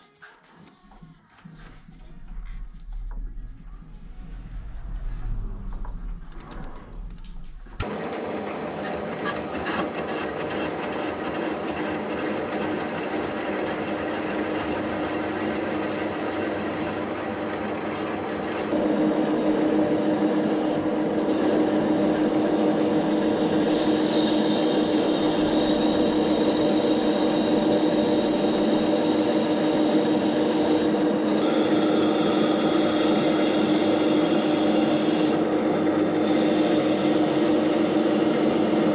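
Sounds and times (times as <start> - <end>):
lathe humming: 7.8 - 38.9.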